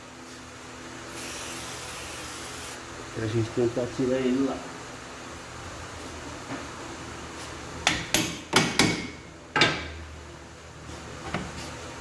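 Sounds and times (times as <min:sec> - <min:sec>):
hammer striking steel bolt: 0:07.9 - 0:09.9.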